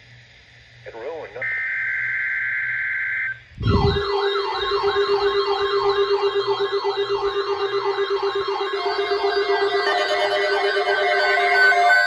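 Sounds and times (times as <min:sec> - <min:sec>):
electronic siren rising wail: 0:01.4 - 0:12.0
steady high beep: 0:01.4 - 0:12.0
steady lower tone: 0:02.6 - 0:12.0.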